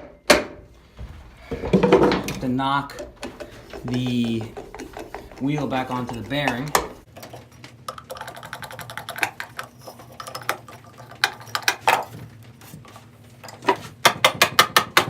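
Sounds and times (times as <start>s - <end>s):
bandsaw humming: 1.4s - 7.1s
fast irregular clicking: 2.9s - 7.1s, 7.9s - 12.0s.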